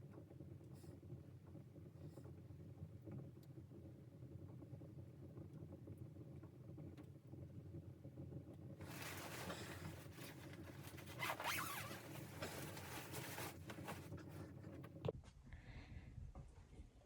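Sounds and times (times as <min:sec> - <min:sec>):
zipper rasping: 0:08.8 - 0:14.4.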